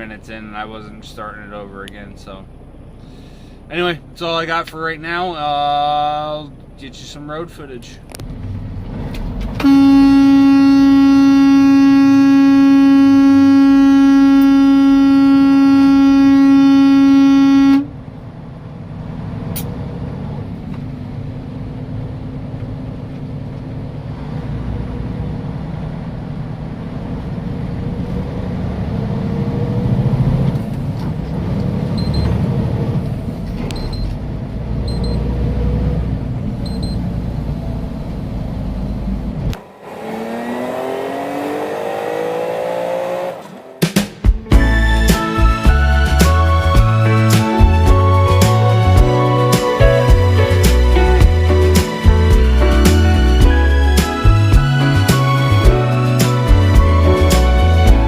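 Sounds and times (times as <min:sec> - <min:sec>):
road noise: 0:00.0 - 0:58.0
truck engine: 0:00.0 - 0:58.0
truck air horn: 0:09.6 - 0:18.0, 0:44.5 - 0:52.8, 0:53.6 - 0:58.0.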